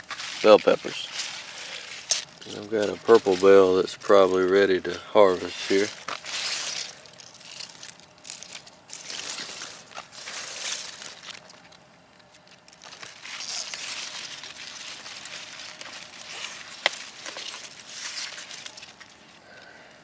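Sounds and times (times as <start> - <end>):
plant leaves rustling: 0.0 - 19.7
stem snapping: 15.2 - 19.1.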